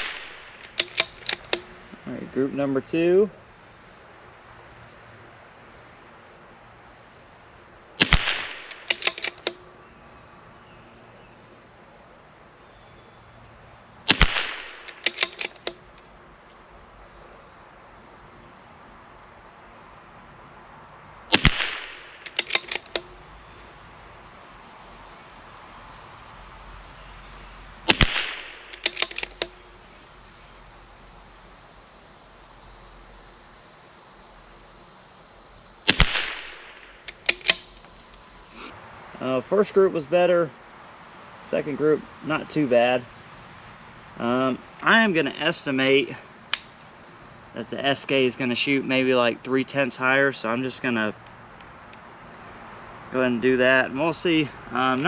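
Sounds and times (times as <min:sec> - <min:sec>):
rifle bolt clicks: 0:00.0 - 0:01.7, 0:08.0 - 0:09.6, 0:14.1 - 0:16.1, 0:21.4 - 0:23.2, 0:27.9 - 0:29.6, 0:35.9 - 0:38.2
rifle shots: 0:00.0 - 0:01.7, 0:08.0 - 0:09.6, 0:14.1 - 0:15.8, 0:21.3 - 0:23.1, 0:27.9 - 0:29.5, 0:35.9 - 0:37.8
high-pitched insect buzz: 0:00.0 - 0:55.0.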